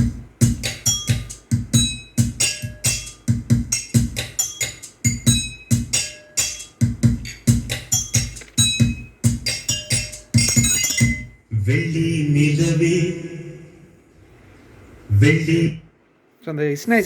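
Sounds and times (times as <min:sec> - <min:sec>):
song with busy drum beat: 0:00.0 - 0:11.4.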